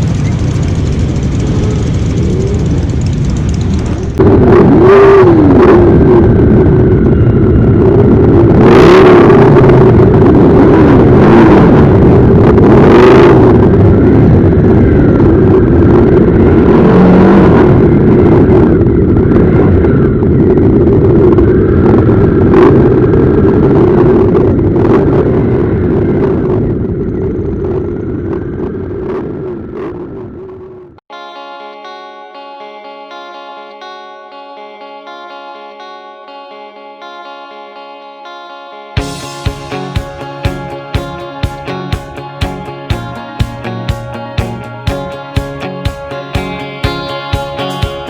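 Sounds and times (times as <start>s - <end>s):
motorcycle engines revving: 0.0s - 7.2s, 39.0s - 48.0s.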